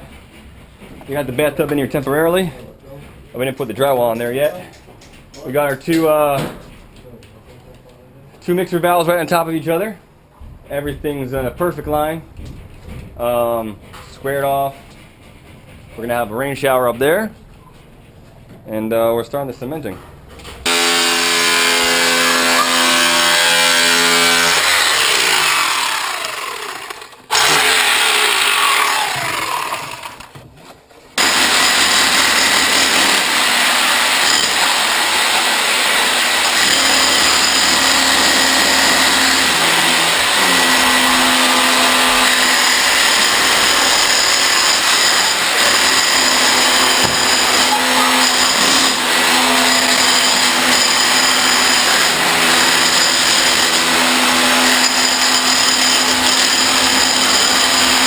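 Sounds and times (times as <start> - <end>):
power tool motor running: 20.7 - 30.4, 31.2 - 58.0.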